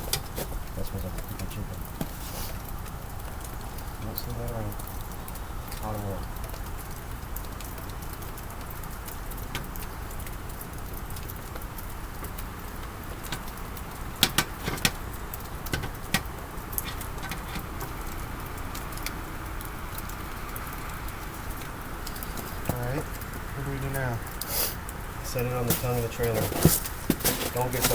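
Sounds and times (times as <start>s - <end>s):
sharp metallic clicks and knocks: 12.2s - 19.1s.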